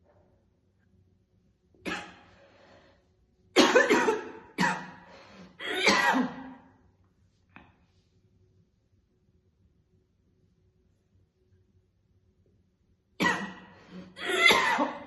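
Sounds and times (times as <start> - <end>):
woman coughing hard: 1.9 - 2.2, 3.6 - 5.0, 5.6 - 6.6, 13.2 - 15.0.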